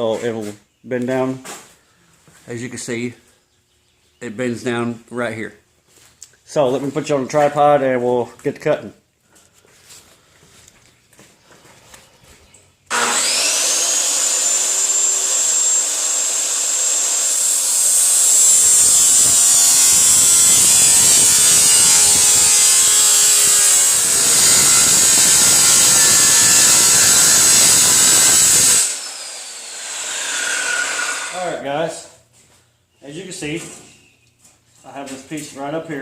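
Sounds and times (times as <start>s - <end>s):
grinding into sheet metal: 12.9s - 31.4s
power tool motor whine: 12.9s - 31.4s.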